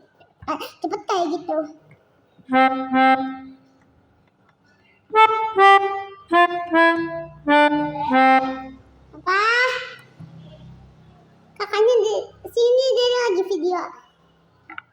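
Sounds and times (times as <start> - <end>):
melodica playing a tune: 2.5 - 3.7, 5.1 - 8.9.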